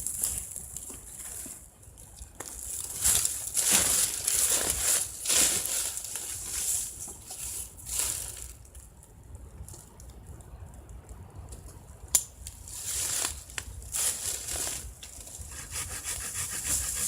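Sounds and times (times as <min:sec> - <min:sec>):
crunching and rustling handling: 0:00.0 - 0:09.1, 0:12.5 - 0:15.5.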